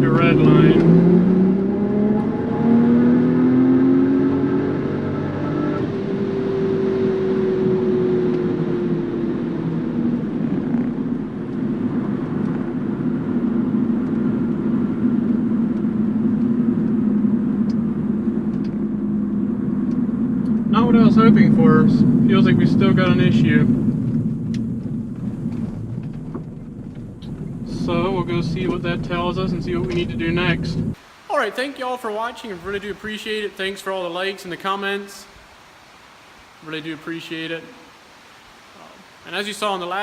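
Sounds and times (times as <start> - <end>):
car engine full-throttle pull: 0.0 - 3.6, 22.4 - 31.0.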